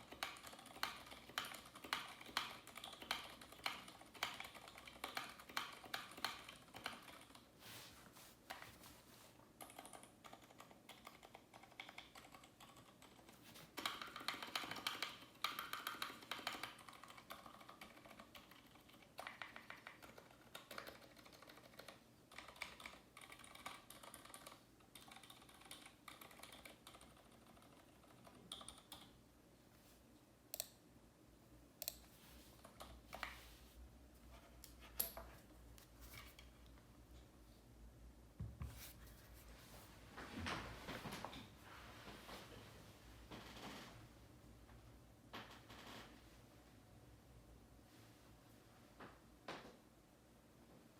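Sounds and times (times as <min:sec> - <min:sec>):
mechanical keyboard typing: 0:00.0 - 0:07.5, 0:09.6 - 0:29.2.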